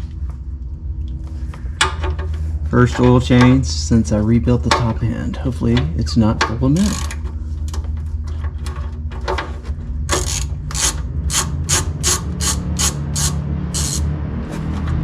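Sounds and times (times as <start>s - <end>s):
steady low hum: 0.0s - 15.0s
hand tool rasping strokes: 10.1s - 14.1s.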